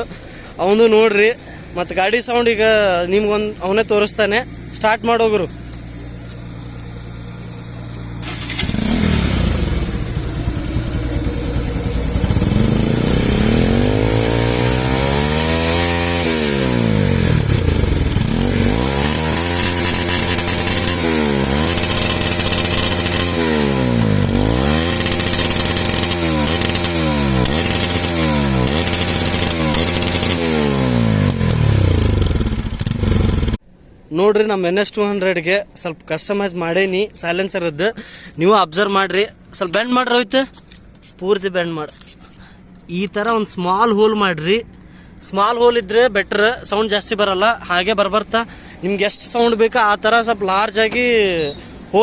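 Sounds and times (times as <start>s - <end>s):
motorcycle engine revving: 3.2s - 33.6s.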